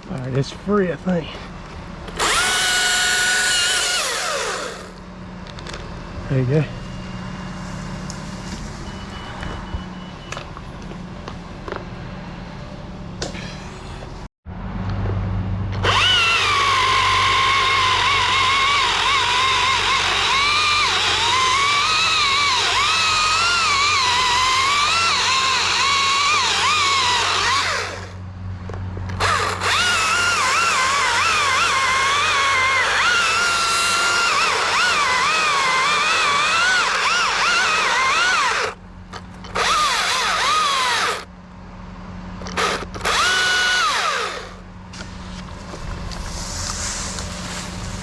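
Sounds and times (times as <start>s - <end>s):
chainsaw cutting: 2.2s - 5.0s, 15.8s - 28.2s, 29.1s - 38.8s, 39.5s - 41.3s, 42.5s - 44.6s
low engine hum: 4.0s - 36.8s, 37.8s - 48.0s.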